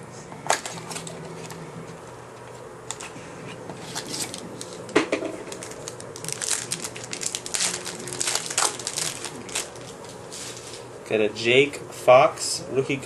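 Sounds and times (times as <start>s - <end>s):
wrapper crinkling: 3.8s - 10.9s.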